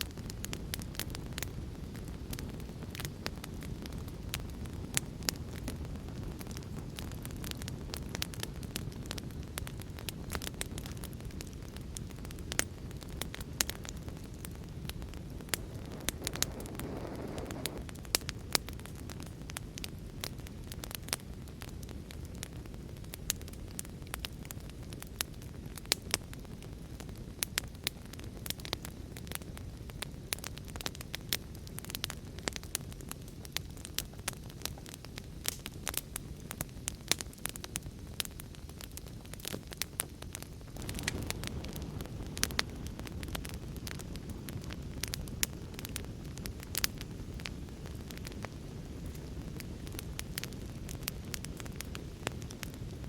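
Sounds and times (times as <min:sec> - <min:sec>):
wood fire crackling and popping: 0:00.0 - 0:53.0
rain rushing: 0:15.6 - 0:17.8.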